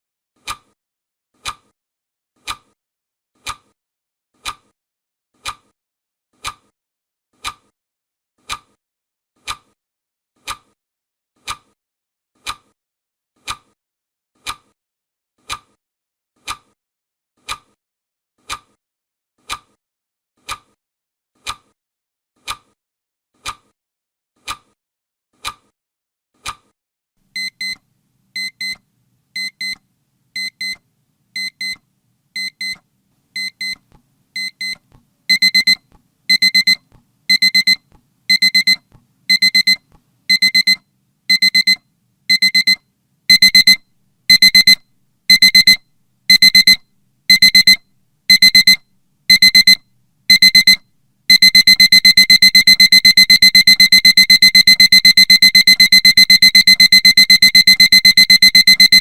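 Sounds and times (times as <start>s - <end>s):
alarm clock beeping: 34.4s - 59.0s.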